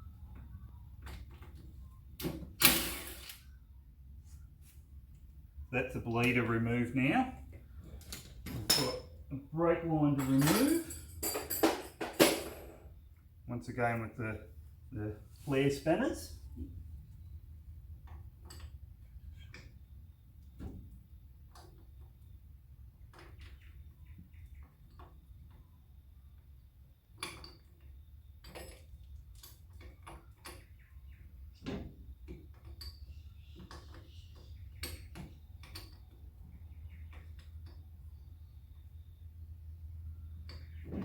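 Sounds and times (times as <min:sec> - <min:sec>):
spanner clinking on metal fitting: 0:10.1 - 0:12.3.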